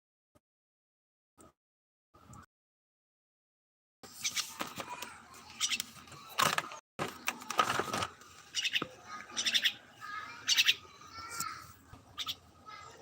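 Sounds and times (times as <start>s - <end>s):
birds calling: 7.2s - 13.0s.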